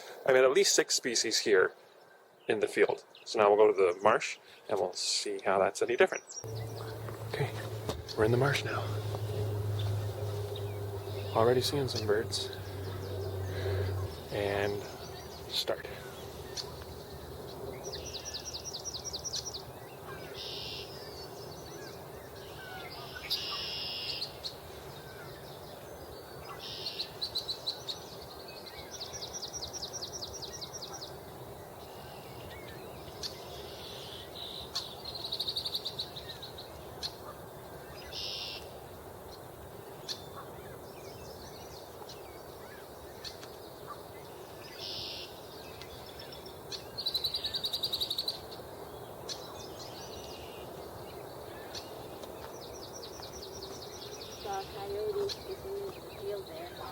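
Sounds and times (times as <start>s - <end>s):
songbirds singing: 0.0s - 56.9s
faint low hum: 6.4s - 23.4s.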